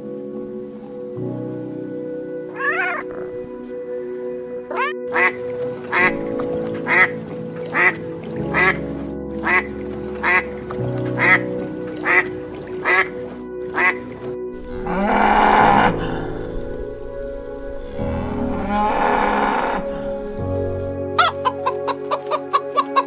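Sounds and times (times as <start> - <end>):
background music: 0.0 - 23.0
duck quacking: 4.7 - 6.3, 6.9 - 8.8, 9.4 - 10.5, 11.2 - 11.4, 12.0 - 14.1.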